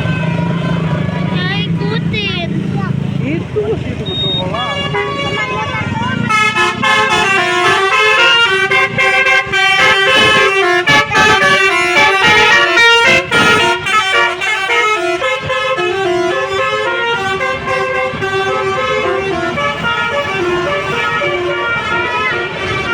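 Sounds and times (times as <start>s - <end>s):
multi-note bus air horns: 0.0s - 2.0s, 4.0s - 22.9s.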